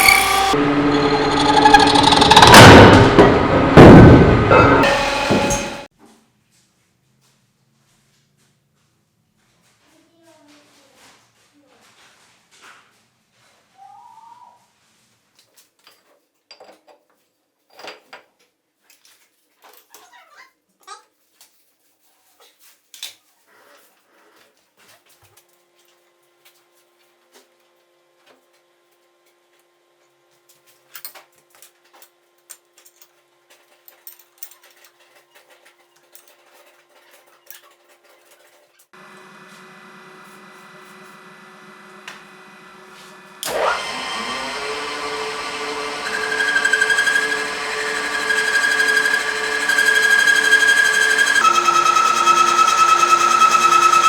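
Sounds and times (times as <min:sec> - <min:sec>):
metal lathe running with ringing tones: 0:00.0 - 0:02.6, 0:04.8 - 0:05.9, 0:39.7 - 0:54.0
motor hum: 0:00.0 - 0:05.9, 0:39.0 - 0:54.0.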